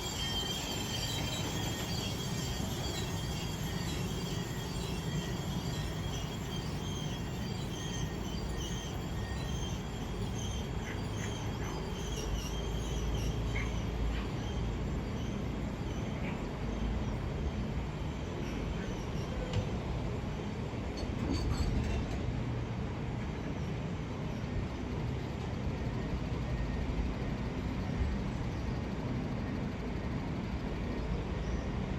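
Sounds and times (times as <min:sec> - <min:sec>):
faint high wheel squeal: 0:00.0 - 0:22.2, 0:23.3 - 0:29.8
wheels rumbling on rail: 0:00.0 - 0:31.9
train clicks: 0:20.7 - 0:22.6.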